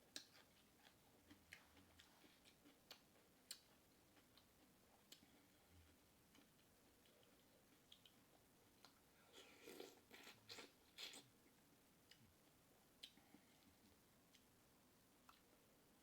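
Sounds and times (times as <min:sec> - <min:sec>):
person chewing seafood: 0:00.1 - 0:04.4, 0:08.8 - 0:11.2.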